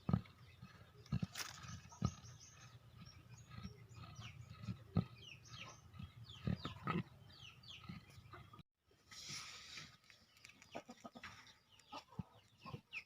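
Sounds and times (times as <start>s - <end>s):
goat labored breathing: 0.0s - 8.6s
small birds chirping: 0.0s - 8.6s, 9.4s - 13.0s.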